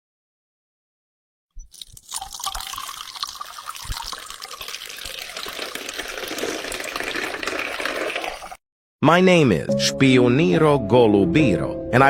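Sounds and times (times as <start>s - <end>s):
ice water pouring and splashing: 1.6s - 8.6s.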